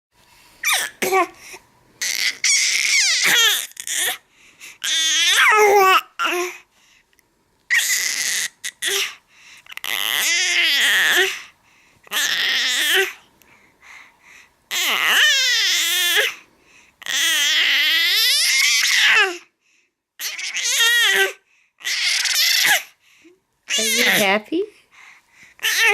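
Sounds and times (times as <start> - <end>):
baby squealing: 0.6 - 1.0, 2.0 - 4.2, 4.8 - 6.5, 7.7 - 9.1, 9.8 - 11.3, 12.1 - 13.1, 14.7 - 16.4, 17.0 - 19.4, 20.2 - 22.9, 25.6 - 25.9.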